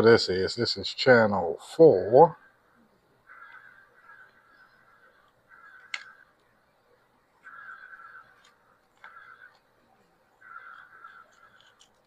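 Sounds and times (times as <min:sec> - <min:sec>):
crow cawing: 0:02.4 - 0:06.4, 0:07.4 - 0:09.7, 0:10.4 - 0:11.9.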